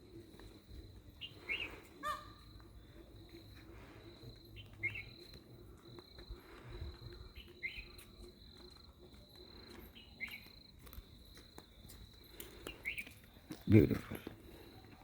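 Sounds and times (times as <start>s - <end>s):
crickets trilling: 0.0s - 15.0s
bird calling: 1.2s - 2.5s, 4.6s - 5.2s.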